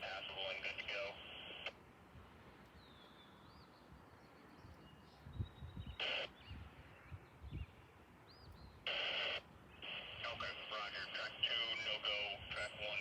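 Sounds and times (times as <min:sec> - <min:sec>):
radio static burst: 0:00.0 - 0:01.8, 0:06.0 - 0:06.4, 0:08.9 - 0:13.0
birds chirping and whistling: 0:02.8 - 0:09.2.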